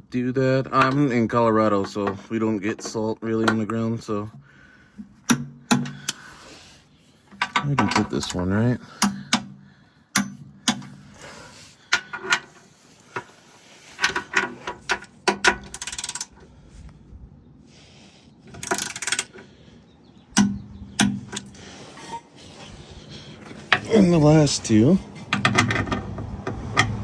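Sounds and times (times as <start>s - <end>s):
metal clicks and knocks: 0.7s - 4.4s, 5.0s - 6.2s, 7.3s - 11.2s, 11.8s - 13.3s, 14.0s - 16.4s, 18.5s - 19.5s, 20.3s - 21.6s, 23.4s - 24.1s, 25.0s - 27.0s
ratchet wrench clicking: 15.7s - 16.3s, 18.6s - 19.3s.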